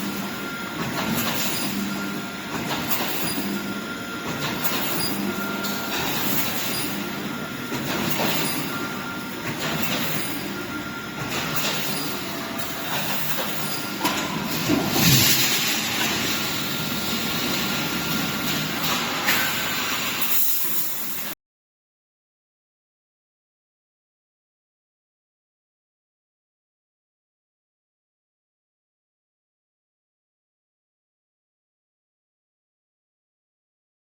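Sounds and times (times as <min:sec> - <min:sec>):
welding machine clattering: 0:04.3 - 0:10.6, 0:11.2 - 0:21.3.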